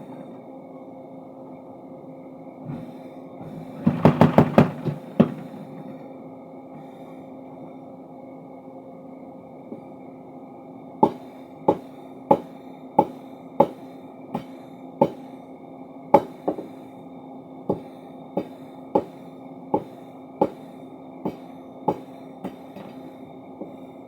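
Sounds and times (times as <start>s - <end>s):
steady machine hum: 0.0s - 24.0s.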